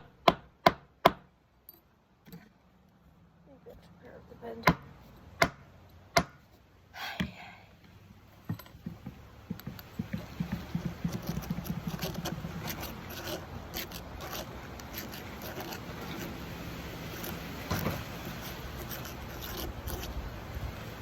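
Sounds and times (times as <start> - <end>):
rapid scraping strokes: 9.5 - 21.0.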